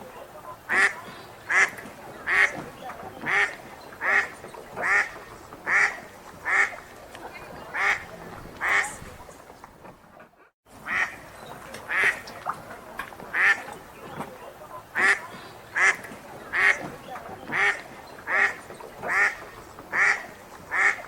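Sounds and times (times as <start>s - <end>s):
faint lake ambience: 0.0s - 21.0s
duck quacking: 0.4s - 9.1s, 10.2s - 11.2s, 11.9s - 12.2s, 13.3s - 13.8s, 14.8s - 21.0s.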